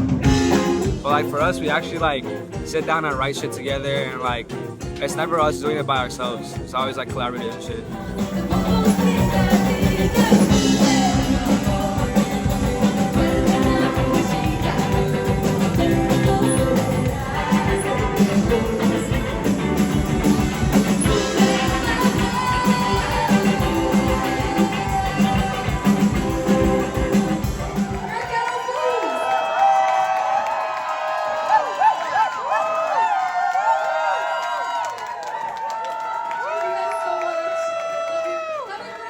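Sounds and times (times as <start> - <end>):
live rock band playing: 0.0 - 28.4
person singing: 1.0 - 27.8.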